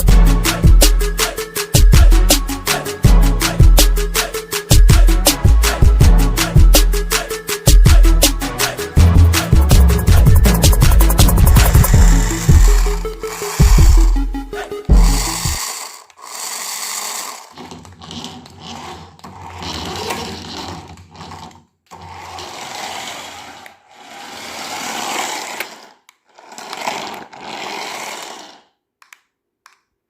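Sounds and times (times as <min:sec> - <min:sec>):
toy car electric motor whirring: 0:10.7 - 0:28.8.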